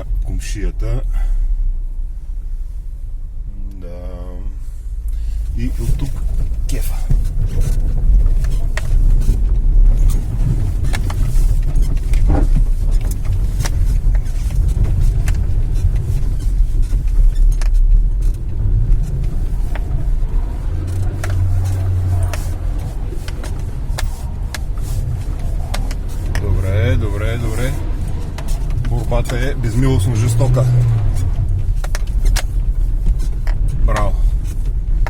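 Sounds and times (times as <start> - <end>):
engine and tyre rumble: 0.0 - 35.0.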